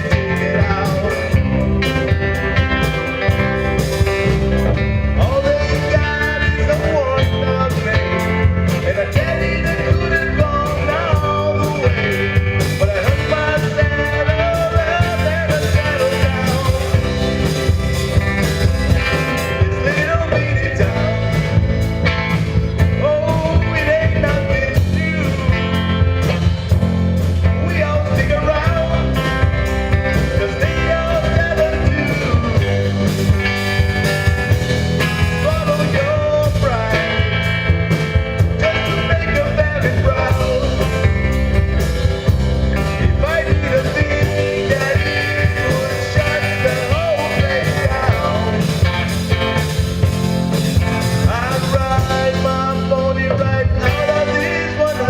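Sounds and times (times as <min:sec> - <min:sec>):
rock and roll music with singing: 0:00.0 - 0:55.0.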